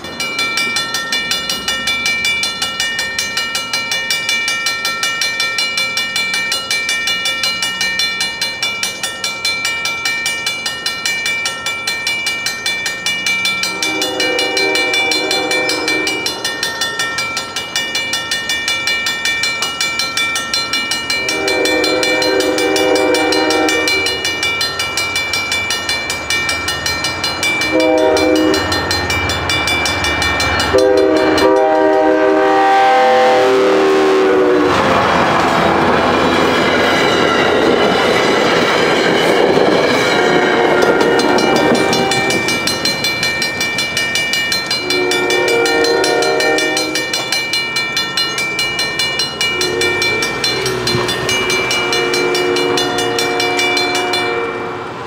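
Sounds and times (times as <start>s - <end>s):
steady high ringing: 0.0s - 34.7s, 35.6s - 54.8s
train rushing past: 0.0s - 55.0s
diesel locomotive horn blasts: 13.6s - 16.4s, 21.2s - 24.4s, 27.7s - 28.7s, 30.7s - 36.2s, 40.0s - 42.4s, 44.8s - 47.1s, 49.5s - 55.0s.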